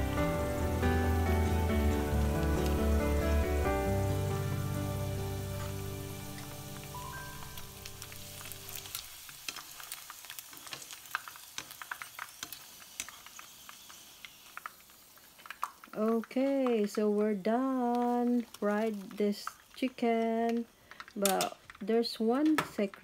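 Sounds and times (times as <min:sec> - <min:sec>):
background music: 0:00.0 - 0:09.0
chicken frying in hot oil: 0:00.0 - 0:23.0.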